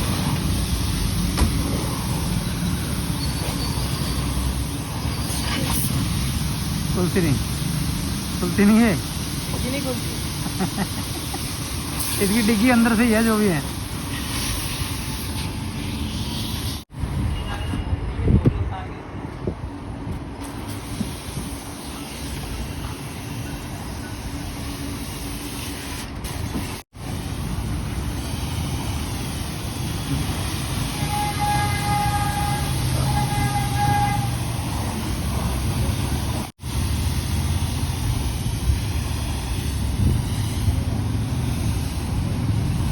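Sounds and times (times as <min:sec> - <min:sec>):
vehicle and road rumble: 0:00.0 - 0:42.9
car horn blasts: 0:31.0 - 0:34.4.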